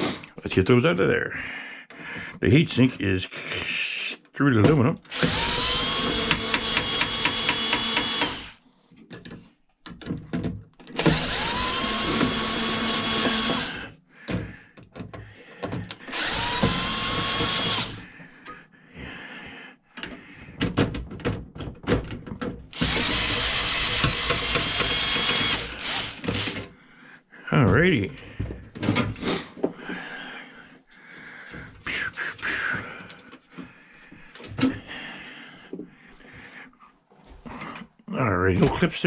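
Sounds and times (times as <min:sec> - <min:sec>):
power drill whining: 0:05.1 - 0:08.6, 0:10.9 - 0:14.0, 0:15.9 - 0:18.0, 0:22.7 - 0:26.7
small parts clicking and rattling: 0:20.8 - 0:26.7.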